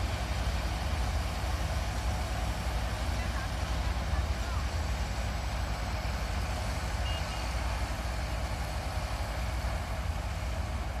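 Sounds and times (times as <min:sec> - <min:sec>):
combine harvester diesel engine: 0:00.0 - 0:11.0.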